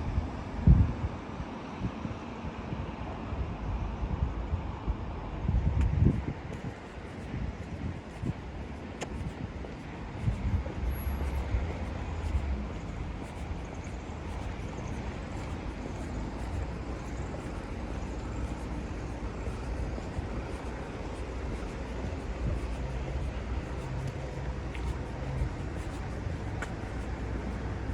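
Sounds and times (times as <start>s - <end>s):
soft footsteps: 5.8s - 27.9s
traffic passing on wet road: 10.2s - 27.9s.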